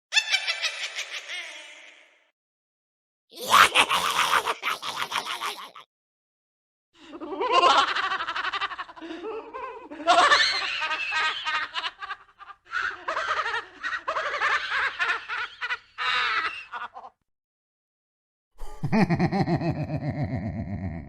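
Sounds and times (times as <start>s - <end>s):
person laughing high-pitched: 3.4s - 5.9s, 18.6s - 21.0s.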